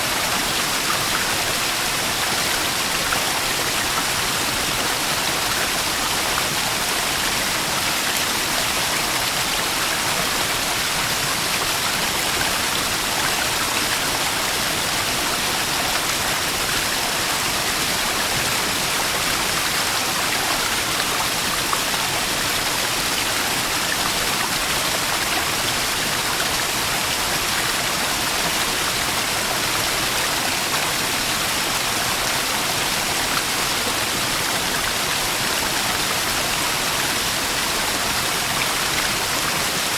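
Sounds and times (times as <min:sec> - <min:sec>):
small waterfall splashing: 0:00.0 - 0:39.9.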